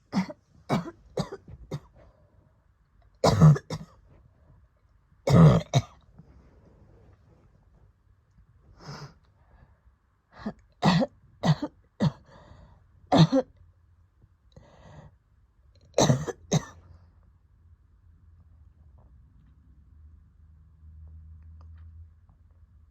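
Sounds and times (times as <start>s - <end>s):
woman coughing: 0.1s - 1.9s, 3.2s - 4.0s, 5.3s - 6.0s, 10.8s - 12.3s, 13.1s - 13.5s, 16.0s - 16.8s
faint breathing: 8.7s - 10.5s, 12.2s - 12.9s, 14.6s - 15.2s.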